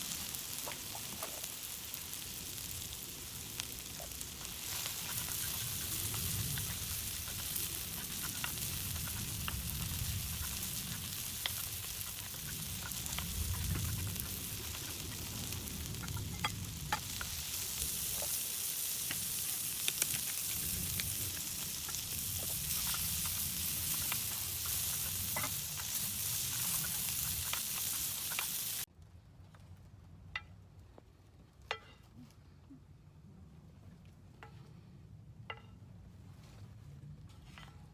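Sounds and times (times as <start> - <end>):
food sizzling: 0.0 - 28.9
sharp ticks: 4.7 - 17.4.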